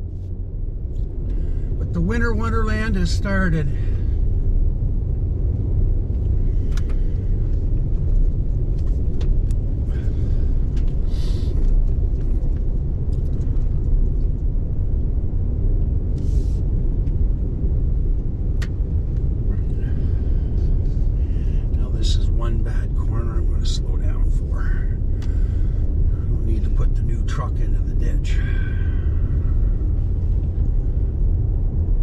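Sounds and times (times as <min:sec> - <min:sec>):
truck engine and tyres on snow: 0:00.0 - 0:32.0.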